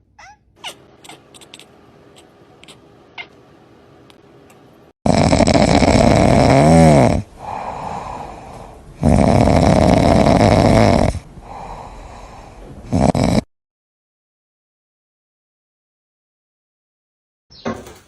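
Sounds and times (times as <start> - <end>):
loud snoring: 5.0 - 8.4, 9.0 - 12.2, 12.8 - 13.5
quiet breathing: 7.2 - 9.0, 11.2 - 12.9.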